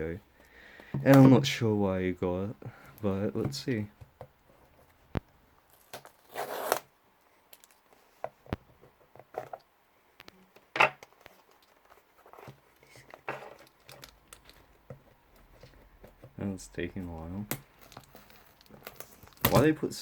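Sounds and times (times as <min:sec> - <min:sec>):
packing tape ripping: 0:05.7 - 0:06.9
small clicks and rustles: 0:07.5 - 0:16.2, 0:17.2 - 0:19.5.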